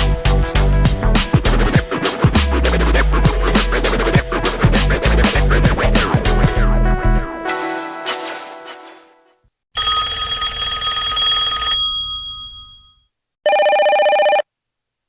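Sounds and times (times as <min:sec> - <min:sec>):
trilling telephone bell ring: 0:09.8 - 0:14.4.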